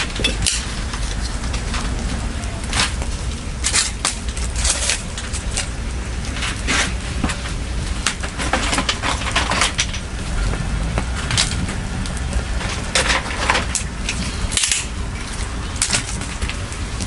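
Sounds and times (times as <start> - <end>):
bonfire crackling: 0.0 - 17.0
low steady rumble: 0.0 - 17.0
snaps and pops of fire: 0.0 - 17.0.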